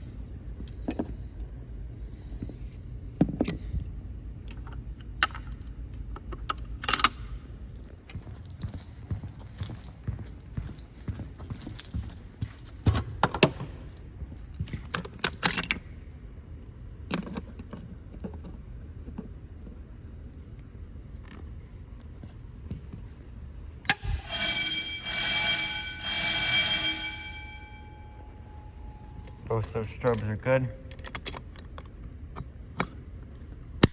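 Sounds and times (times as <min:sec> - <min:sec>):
metallic jangling: 0:06.8 - 0:16.2
fire alarm bell ringing: 0:23.9 - 0:30.7.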